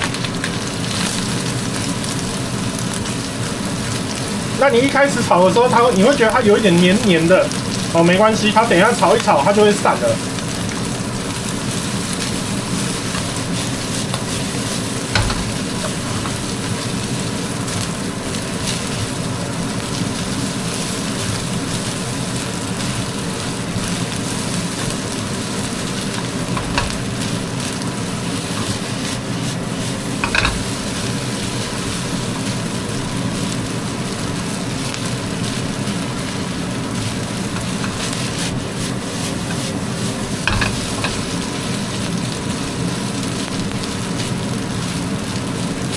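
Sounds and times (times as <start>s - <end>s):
rice sizzling in a wok: 0.0s - 45.9s
spatula knocking on wok: 15.2s - 16.4s, 26.2s - 27.1s, 30.2s - 30.8s, 40.4s - 41.3s.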